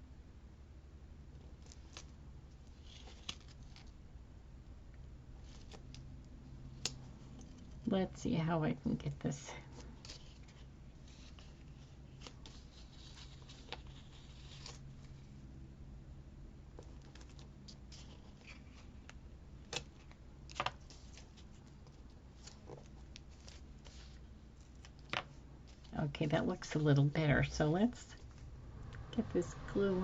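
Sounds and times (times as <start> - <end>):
paper rustling: 1.5 - 4.0, 9.7 - 15.3, 16.8 - 26.0.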